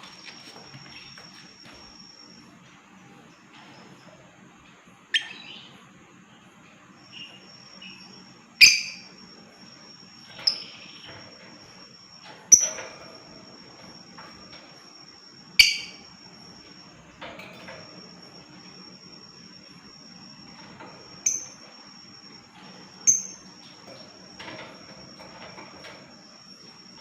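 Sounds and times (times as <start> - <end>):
lovebirds shrill chirps: 5.1 - 5.8, 7.1 - 9.1.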